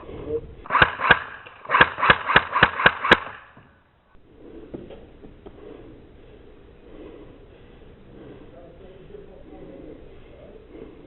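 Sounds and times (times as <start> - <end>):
airsoft rifle shots: 0.7 - 3.6.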